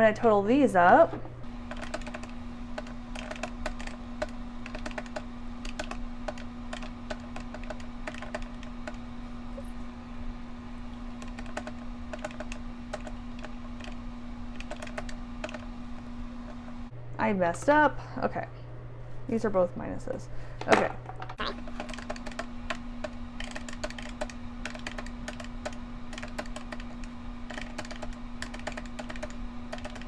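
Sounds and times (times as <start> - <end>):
fingers tapping keys: 1.7 - 9.1, 11.2 - 15.7, 21.8 - 30.0.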